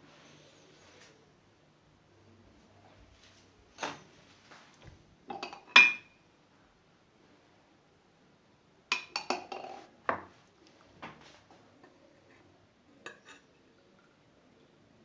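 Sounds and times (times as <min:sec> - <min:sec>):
spoon clinking on glassware: 0:05.3 - 0:06.2, 0:08.9 - 0:09.8.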